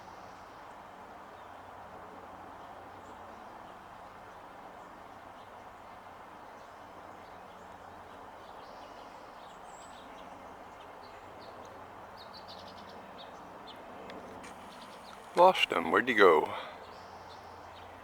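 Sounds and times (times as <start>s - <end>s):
outdoor background hiss: 0.0s - 18.0s
small songbirds chirping: 6.5s - 18.0s.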